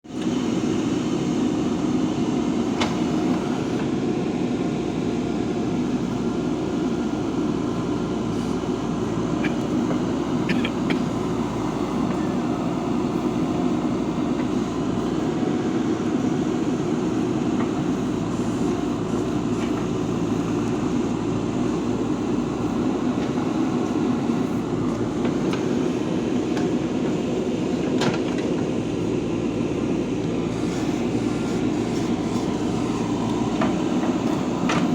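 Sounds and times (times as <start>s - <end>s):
diesel engine running: 0.1s - 34.9s.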